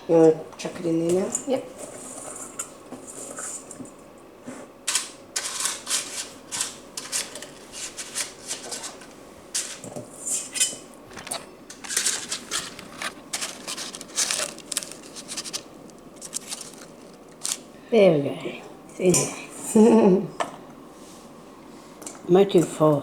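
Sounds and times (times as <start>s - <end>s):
cornflakes rustling in a bowl: 11.2s - 17.6s.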